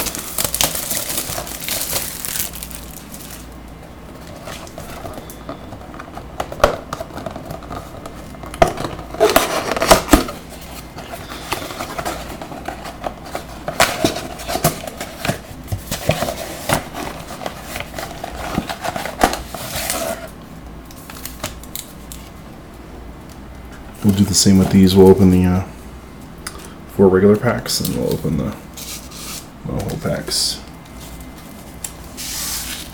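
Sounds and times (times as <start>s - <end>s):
cardboard and wrapping crinkling: 0.0s - 20.4s.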